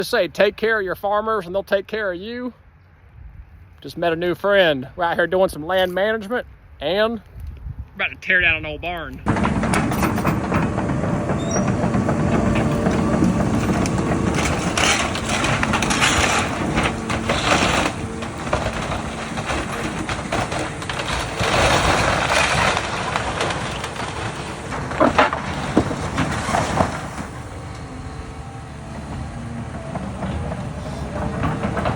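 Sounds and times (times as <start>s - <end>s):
crashing and splintering wood: 9.2s - 28.0s, 28.9s - 31.9s
excavator diesel engine running: 9.2s - 31.9s.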